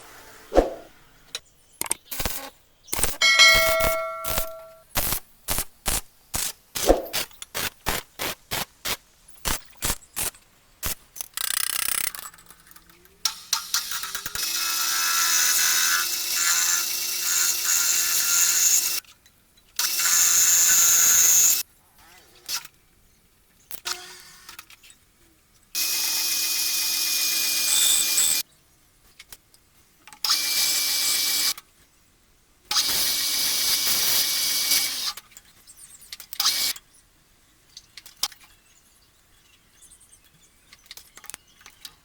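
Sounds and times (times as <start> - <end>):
hammer striking metal: 3.2 - 4.8.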